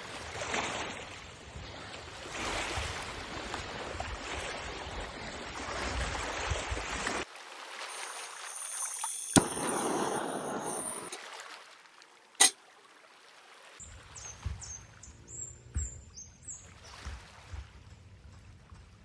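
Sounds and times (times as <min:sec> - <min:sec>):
running water: 0:00.0 - 0:14.1.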